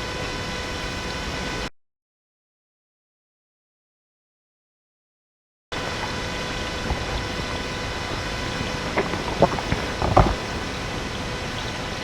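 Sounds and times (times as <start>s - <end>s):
steady hiss with electrical tones: 0.0s - 1.7s, 5.8s - 12.0s.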